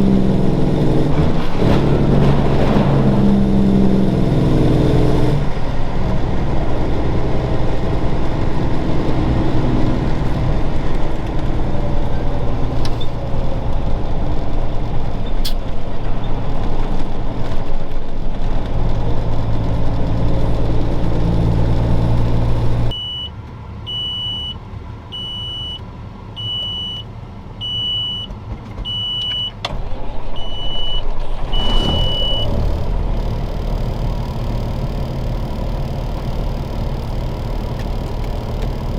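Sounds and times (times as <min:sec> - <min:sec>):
truck diesel engine running: 0:00.0 - 0:22.9, 0:28.3 - 0:38.9
road noise: 0:00.0 - 0:38.9
short high beeps: 0:22.9 - 0:23.3.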